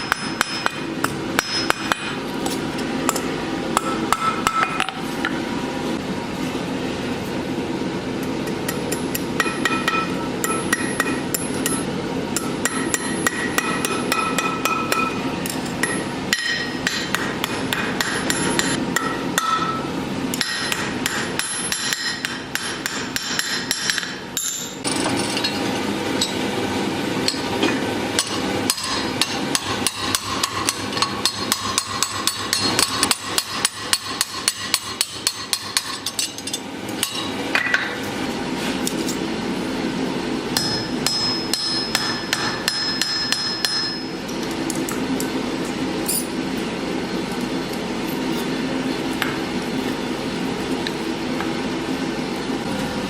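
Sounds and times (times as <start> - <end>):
hammer striking steel on anvil: 0.0 - 2.2, 2.8 - 5.4, 8.4 - 25.6, 27.2 - 38.1, 40.5 - 44.2.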